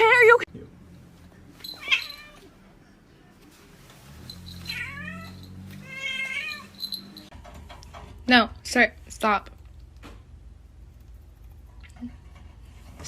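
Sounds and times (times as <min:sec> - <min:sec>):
cat meowing: 0:04.7 - 0:06.8.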